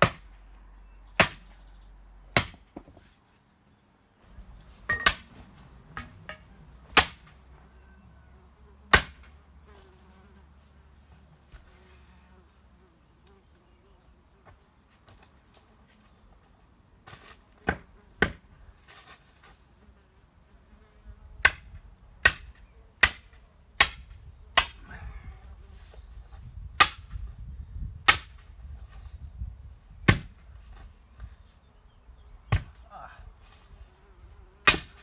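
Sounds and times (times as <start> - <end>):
hand tool chopping stump: 30.1 - 30.4, 34.6 - 35.0.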